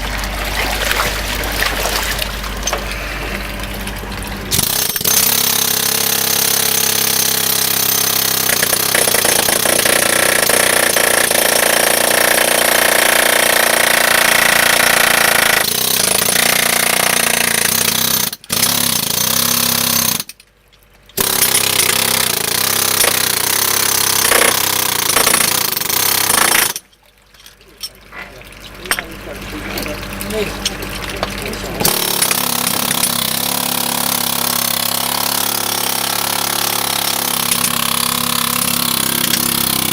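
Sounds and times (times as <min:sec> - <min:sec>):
jackhammer hammering sheet metal: 0:04.5 - 0:20.3, 0:21.2 - 0:26.8, 0:31.8 - 0:39.9.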